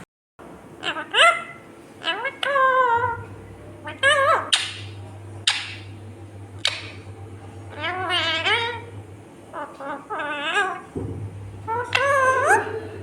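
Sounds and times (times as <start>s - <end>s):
parrot screeching: 0.8s - 4.9s, 7.7s - 8.9s, 9.5s - 11.0s, 11.7s - 12.8s
parrot talk-like warbling: 0.8s - 5.8s, 7.7s - 8.9s, 9.5s - 11.0s, 11.7s - 12.8s.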